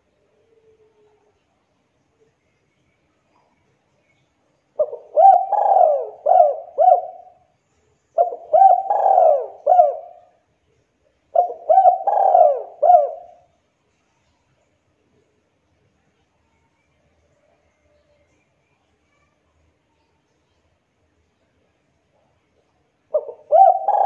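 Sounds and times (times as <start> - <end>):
dove cooing: 4.8 - 7.4, 8.2 - 10.3, 11.3 - 13.5, 23.1 - 24.0.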